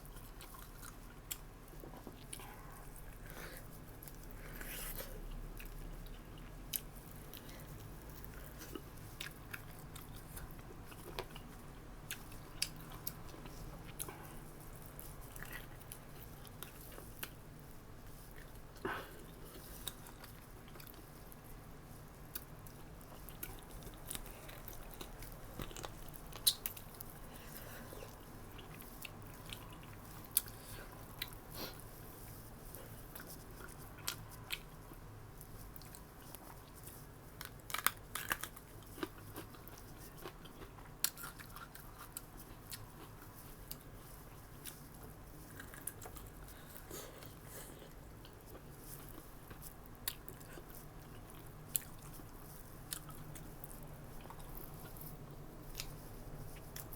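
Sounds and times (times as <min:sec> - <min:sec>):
person chewing and biting: 0:37.4 - 0:56.9.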